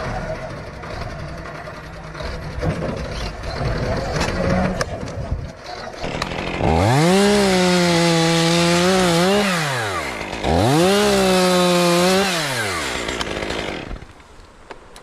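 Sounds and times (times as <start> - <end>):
chainsaw revving: 6.0 - 14.2.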